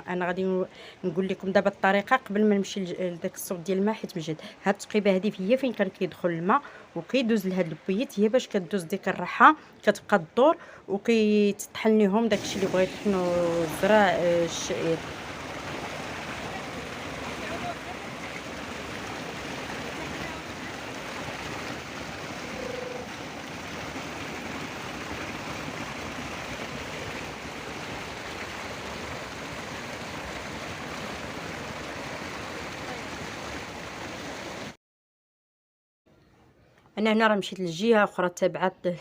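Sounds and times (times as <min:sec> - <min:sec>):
mountain water rushing: 0:12.2 - 0:34.8.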